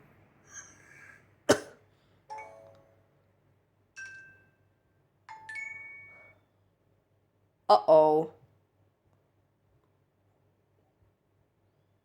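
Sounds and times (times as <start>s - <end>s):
phone notification chimes: 2.3s - 3.0s, 5.3s - 6.4s.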